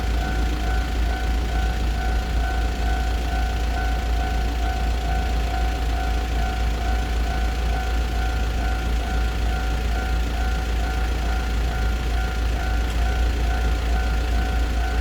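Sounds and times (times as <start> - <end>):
level crossing warning bell: 0.0 - 15.0.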